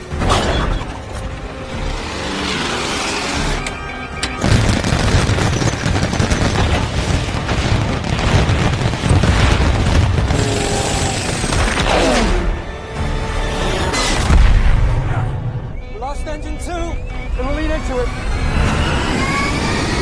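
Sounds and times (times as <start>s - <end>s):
orchestral music score: 0.0s - 5.0s, 10.1s - 20.0s.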